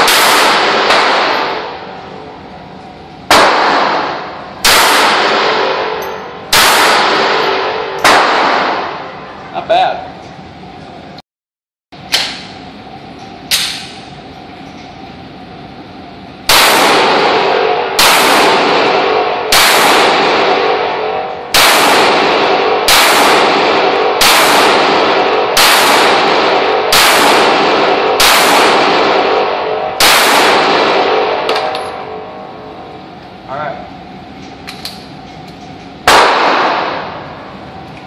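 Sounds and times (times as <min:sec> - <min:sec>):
gunshots with echo: 0:00.0 - 0:02.0, 0:03.3 - 0:09.1, 0:16.5 - 0:32.2, 0:36.0 - 0:37.3.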